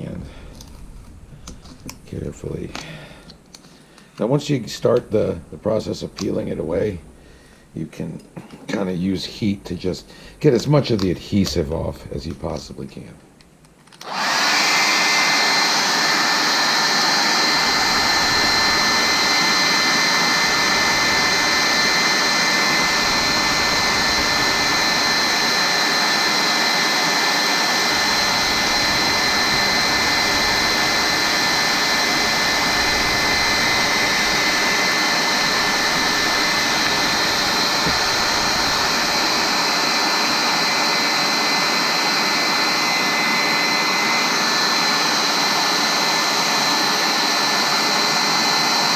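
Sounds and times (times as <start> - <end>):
hair dryer running: 14.0 - 48.9.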